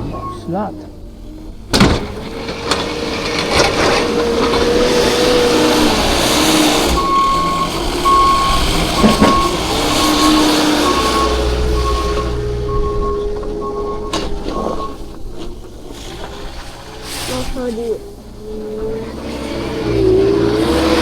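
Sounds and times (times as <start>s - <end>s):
reversing alarm beeping: 0.0s - 0.9s, 6.6s - 15.2s
truck engine running: 0.0s - 21.0s.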